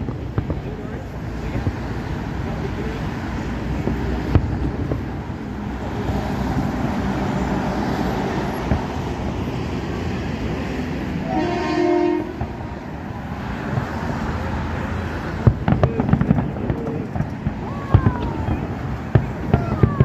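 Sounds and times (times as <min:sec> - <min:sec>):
low rumble of passing traffic: 0:00.0 - 0:20.0
horn sounding one note: 0:11.2 - 0:12.4.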